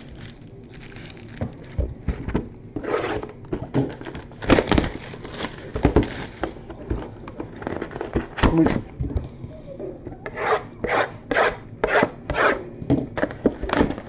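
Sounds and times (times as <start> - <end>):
wrappers and cards crinkling: 0.0 - 2.1, 3.9 - 6.7.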